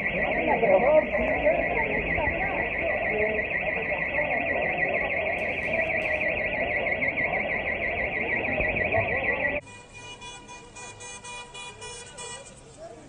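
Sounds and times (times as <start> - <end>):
electronic alarm warbling: 0.0 - 9.7
people's voices: 0.0 - 13.0
street noise: 0.0 - 13.0.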